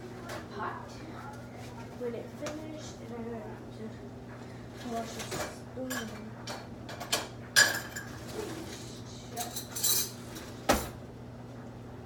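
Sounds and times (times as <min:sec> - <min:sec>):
pot and spoon clattering: 0:05.3 - 0:08.2.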